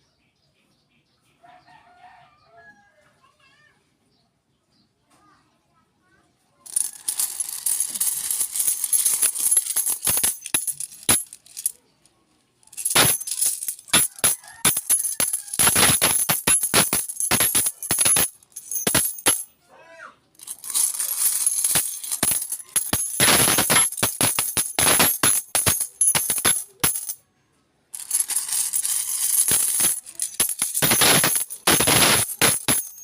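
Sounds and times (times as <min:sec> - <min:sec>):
coins rattling and clinking: 0:06.7 - 0:11.9, 0:12.7 - 0:19.5, 0:20.4 - 0:27.2, 0:28.0 - 0:33.0.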